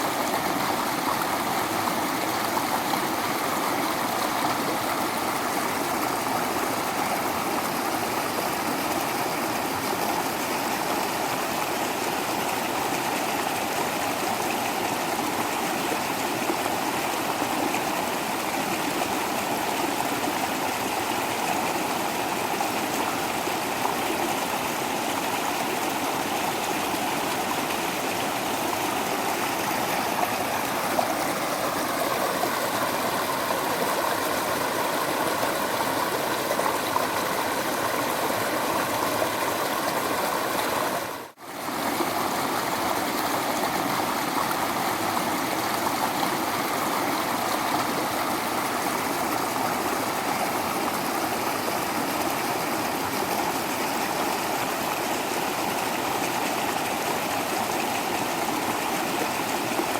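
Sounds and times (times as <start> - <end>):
waterfall rushing: 25.9 - 59.6.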